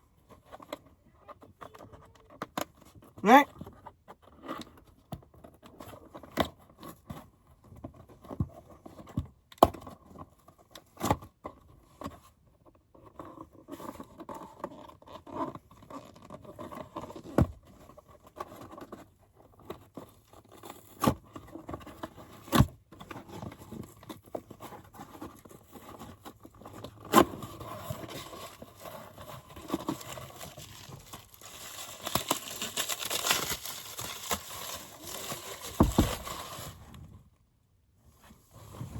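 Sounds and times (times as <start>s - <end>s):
packaging rustling and crinkling: 23.4s - 37.1s
taps and knocks on packaging: 35.7s - 36.4s.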